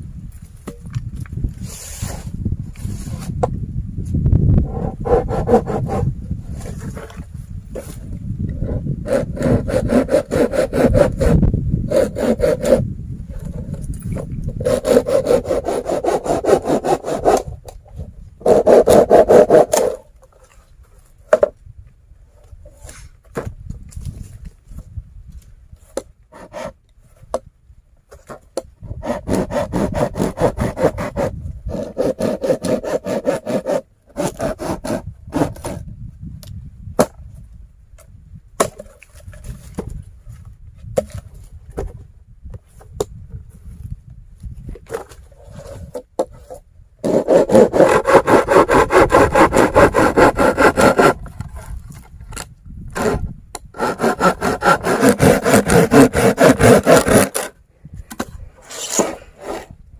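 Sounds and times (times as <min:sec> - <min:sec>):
hand saw cutting wood: 0:04.7 - 0:07.2, 0:08.6 - 0:12.8, 0:14.5 - 0:17.6, 0:18.4 - 0:20.0, 0:26.3 - 0:26.8, 0:28.8 - 0:35.8, 0:44.9 - 0:51.8, 0:53.0 - 0:57.6, 0:58.2 - 0:59.7.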